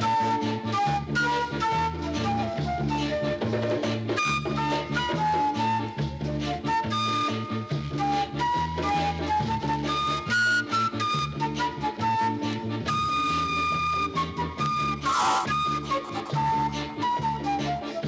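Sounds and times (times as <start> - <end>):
instrumental reggae music: 14.0 - 18.0.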